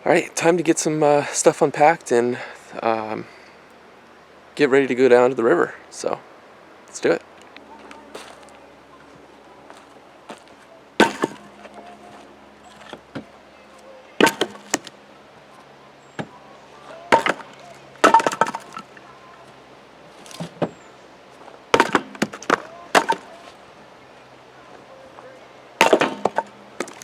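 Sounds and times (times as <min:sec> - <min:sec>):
firewood knocking and dropping: 0:11.0 - 0:11.5, 0:14.2 - 0:14.9, 0:17.0 - 0:19.0, 0:21.7 - 0:23.6, 0:25.8 - 0:27.0.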